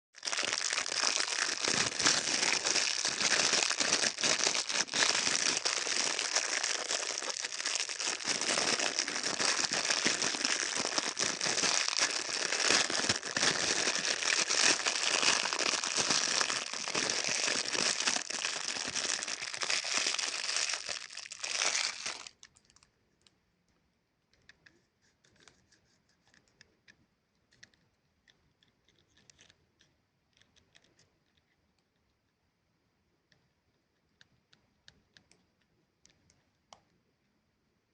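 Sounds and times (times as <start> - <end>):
plastic wrapper crinkling: 0.2 - 22.9.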